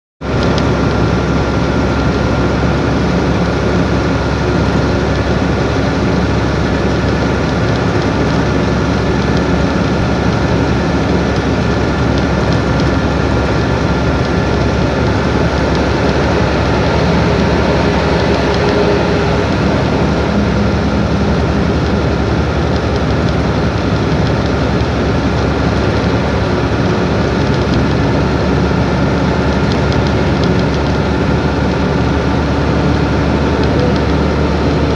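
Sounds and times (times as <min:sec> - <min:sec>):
truck engine running: 0:00.2 - 0:34.9.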